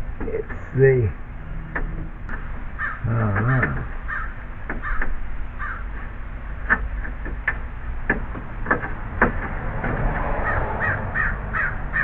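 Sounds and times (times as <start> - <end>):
crows cawing: 2.8 - 6.0, 10.4 - 12.0.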